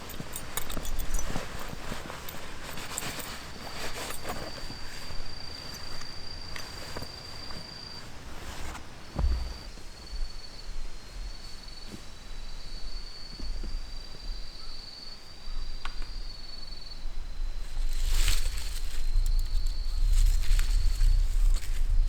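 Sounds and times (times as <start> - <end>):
rustling: 0.0 - 10.1.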